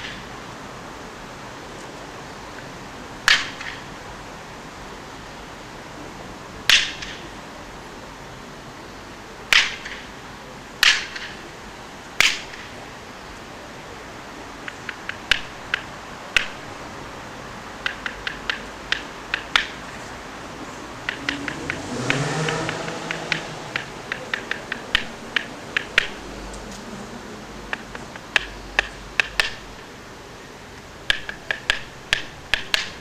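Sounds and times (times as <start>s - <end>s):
loud sharp clacks: 3.2s - 3.9s, 6.7s - 7.3s, 9.5s - 10.1s, 10.8s - 11.4s, 12.2s - 12.8s, 17.8s - 20.0s, 21.0s - 26.2s, 27.7s - 29.9s, 31.1s - 33.0s.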